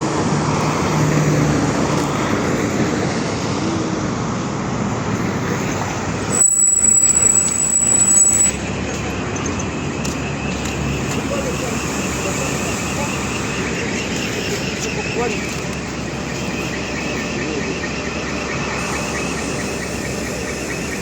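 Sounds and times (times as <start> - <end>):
bus engine and road noise: 0.0 - 21.0
steady high tone: 6.1 - 10.0.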